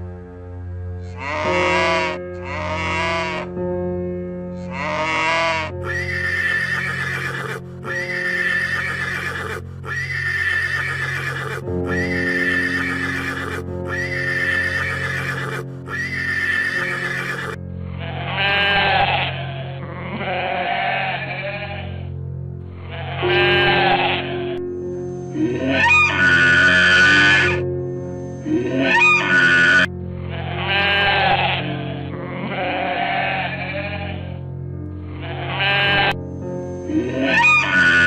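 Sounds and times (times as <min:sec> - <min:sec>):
background music with held notes: 0:00.0 - 0:38.0
farm animal calls: 0:01.0 - 0:03.5, 0:04.6 - 0:22.1, 0:22.8 - 0:24.6, 0:25.3 - 0:27.6, 0:28.3 - 0:34.4, 0:35.2 - 0:36.2, 0:36.8 - 0:38.0.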